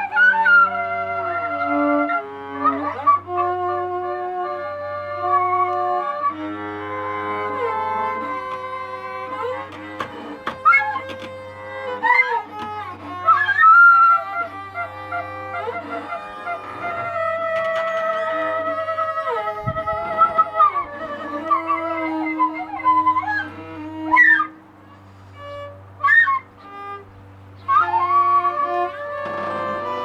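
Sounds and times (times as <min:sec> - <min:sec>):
flute long sliding notes: 0:00.0 - 0:27.0, 0:27.6 - 0:30.0
scattered clicks and knocks: 0:08.4 - 0:13.0, 0:16.8 - 0:18.4, 0:29.2 - 0:30.0.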